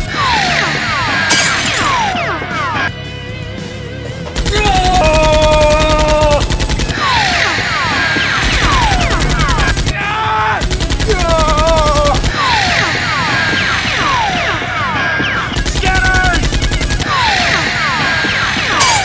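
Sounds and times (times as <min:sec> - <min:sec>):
music: 0:00.0 - 0:19.0
machine-gun sound effects: 0:04.4 - 0:07.6, 0:08.3 - 0:09.9, 0:10.6 - 0:13.1, 0:15.6 - 0:19.0.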